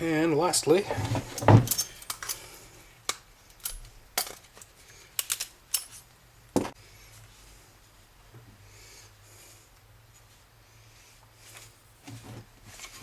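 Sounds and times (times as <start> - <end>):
metal parts clinking: 1.3 - 2.5, 3.6 - 6.1
metallic clicks of hand tools: 3.1 - 6.0.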